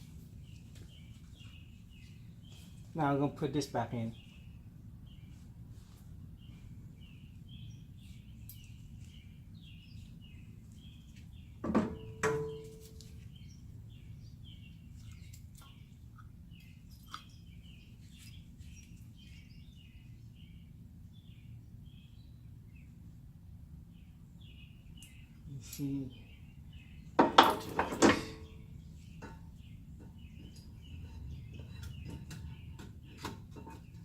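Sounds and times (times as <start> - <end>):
small birds chirping: 0.0 - 34.0
sharp metal clanks: 11.8 - 13.0.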